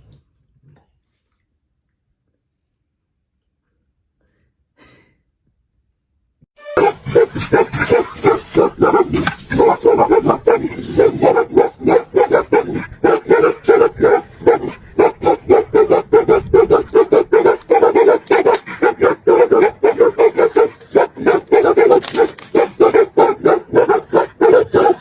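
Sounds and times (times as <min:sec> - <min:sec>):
dog barking rapidly: 0:06.7 - 0:25.0.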